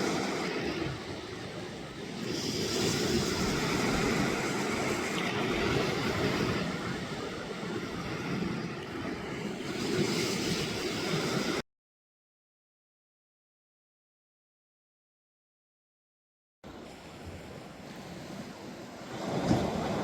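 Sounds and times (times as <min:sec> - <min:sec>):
sea waves washing onto beach: 0:00.0 - 0:11.6, 0:16.7 - 0:20.0.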